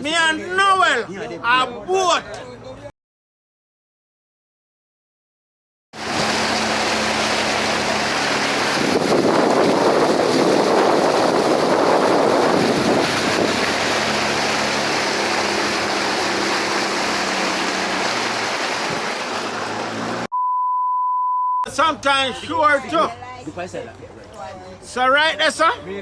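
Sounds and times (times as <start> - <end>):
boat engine humming: 6.0 - 20.3
water rushing: 6.0 - 20.3
wind on microphone: 8.1 - 14.6.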